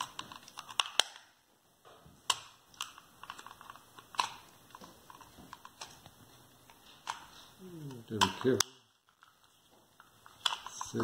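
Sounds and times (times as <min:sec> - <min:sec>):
plastic housing clicking and snapping: 0:00.0 - 0:01.3, 0:10.3 - 0:11.0.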